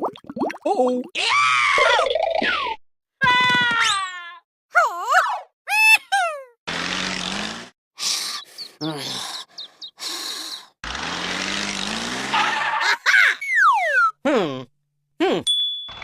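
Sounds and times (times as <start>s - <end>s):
truck engine revving: 6.7s - 7.7s, 10.8s - 12.8s.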